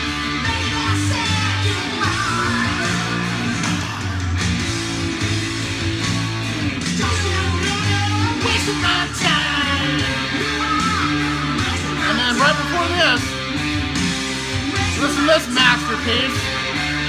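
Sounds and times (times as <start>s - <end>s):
person singing: 0.0s - 4.3s, 7.0s - 13.3s, 14.7s - 16.6s
hard rock music from a record: 0.0s - 17.0s.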